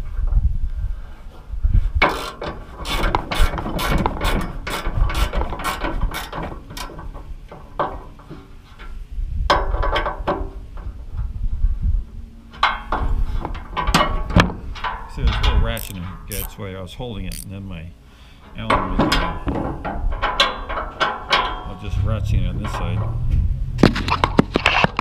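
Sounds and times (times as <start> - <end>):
ratchet wrench clicking: 15.8 - 16.5, 17.3 - 17.5.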